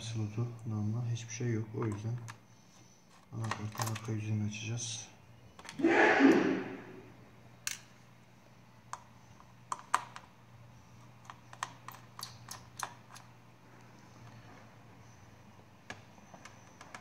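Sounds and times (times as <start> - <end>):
small plastic and metal parts clicking: 3.1 - 4.2, 7.6 - 7.9, 11.0 - 13.4.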